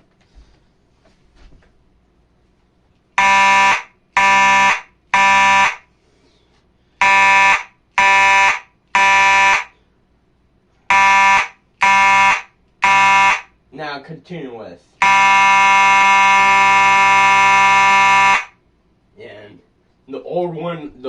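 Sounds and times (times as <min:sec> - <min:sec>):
fire alarm horn buzzing blasts: 0:03.2 - 0:05.9, 0:07.0 - 0:09.8, 0:10.9 - 0:13.6, 0:15.0 - 0:18.6.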